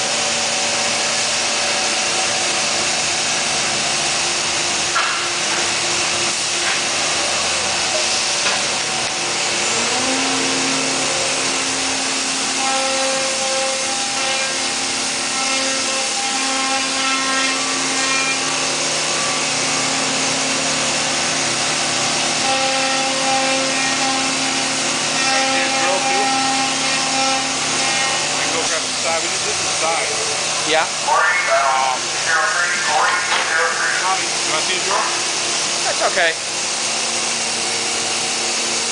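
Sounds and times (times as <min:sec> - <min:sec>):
machine noise: 0:00.0 - 0:38.9
machine whine: 0:00.0 - 0:38.9.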